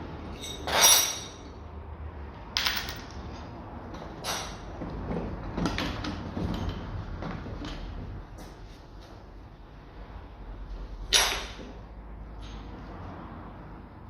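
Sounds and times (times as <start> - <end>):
metallic clinks and knocks: 2.6 - 3.2.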